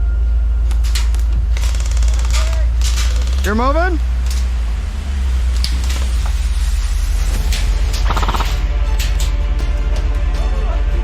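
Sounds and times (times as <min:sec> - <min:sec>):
music: 0:05.0 - 0:11.0
short rattling burst: 0:08.0 - 0:08.8.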